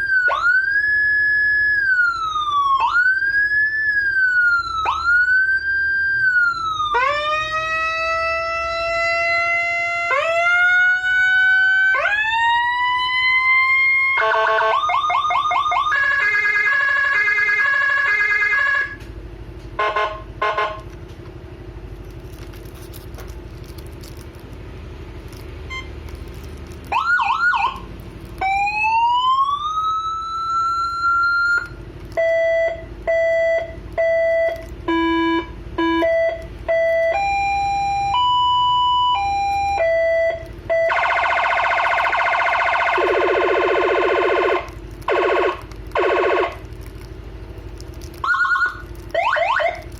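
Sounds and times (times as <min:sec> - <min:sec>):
electronic sirens rising sweeps: 0:00.0 - 0:19.0, 0:26.9 - 0:46.6, 0:48.2 - 0:49.8
short siren blips: 0:26.9 - 0:46.6, 0:48.2 - 0:49.9
pulsed siren beeps: 0:28.4 - 0:46.6
siren fast warbling tone: 0:37.1 - 0:46.6.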